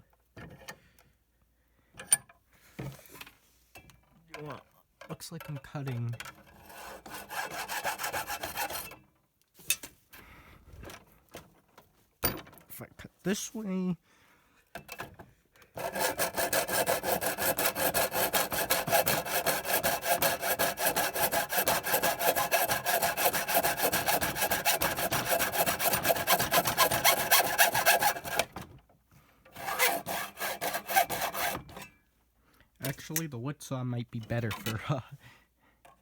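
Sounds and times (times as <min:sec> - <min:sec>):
hand saw cutting plastic: 0:06.6 - 0:09.0, 0:15.7 - 0:28.7, 0:29.5 - 0:32.0.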